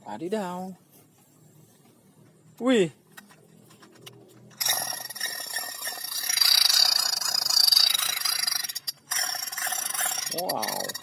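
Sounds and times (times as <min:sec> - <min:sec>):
plastic toy gun rattling: 0:04.5 - 0:11.0.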